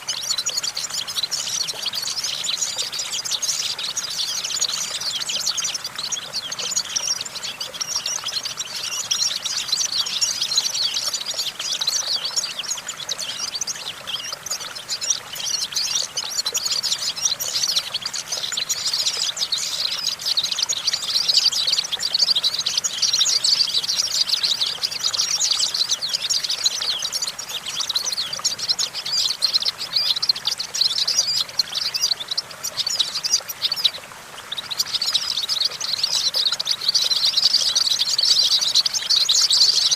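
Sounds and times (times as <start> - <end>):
goldfinch twittering song: 0.0 - 39.9.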